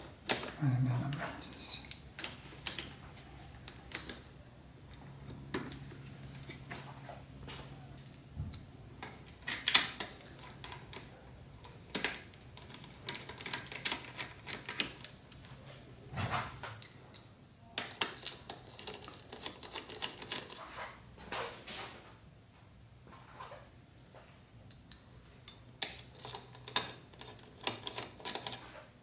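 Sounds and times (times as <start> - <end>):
metal parts clicking and knocking: 0.2 - 0.6, 1.5 - 3.0, 3.6 - 4.3, 8.0 - 15.5, 16.8 - 20.6, 24.7 - 28.7.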